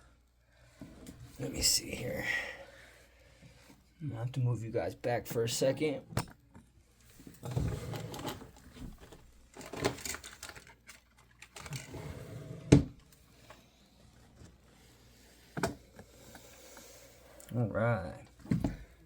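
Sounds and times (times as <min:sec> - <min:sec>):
rustling handling noise: 0:07.0 - 0:11.9.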